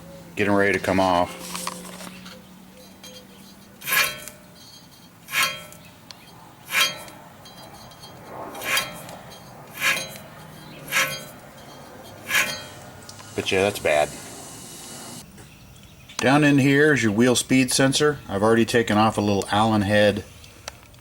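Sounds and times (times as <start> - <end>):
wire brush scraping bolts: 0.6 - 14.0.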